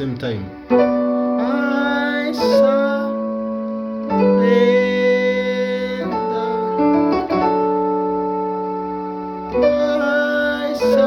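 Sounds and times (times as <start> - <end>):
piano playing chords: 0.0 - 11.0
person singing: 1.3 - 7.5, 9.5 - 11.0.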